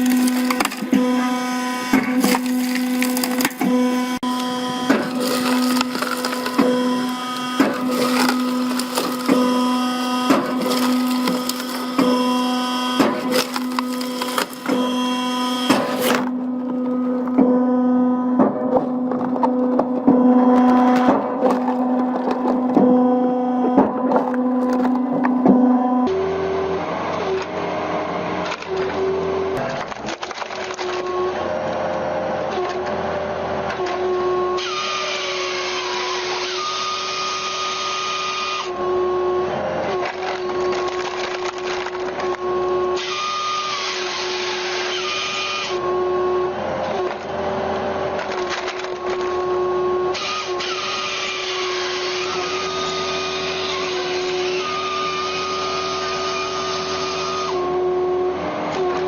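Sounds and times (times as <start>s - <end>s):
harsh cutting noise: 0.0s - 17.6s
power saw cutting wood: 0.0s - 26.1s, 33.8s - 59.0s.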